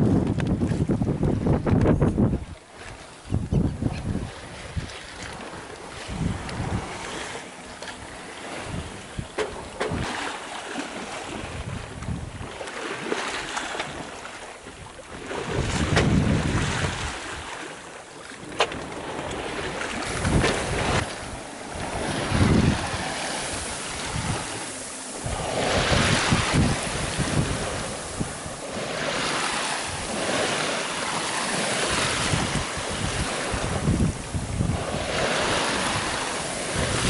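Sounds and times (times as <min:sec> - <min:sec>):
wind buffeting microphone: 0:00.0 - 0:17.6, 0:18.4 - 0:37.0
water rushing along a hull: 0:00.0 - 0:37.0.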